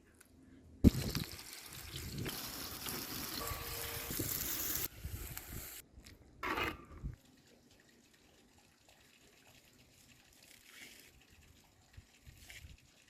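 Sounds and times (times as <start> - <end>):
water pouring: 0.9 - 4.9, 7.2 - 13.0.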